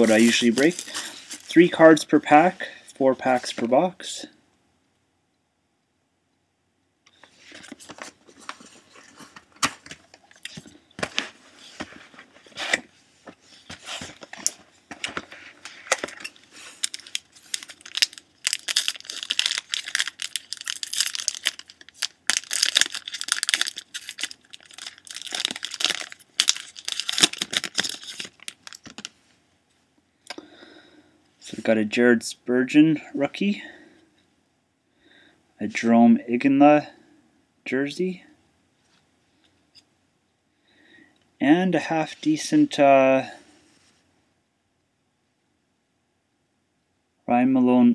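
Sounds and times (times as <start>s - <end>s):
packaging being torn open: 0.0s - 1.5s, 15.8s - 29.1s.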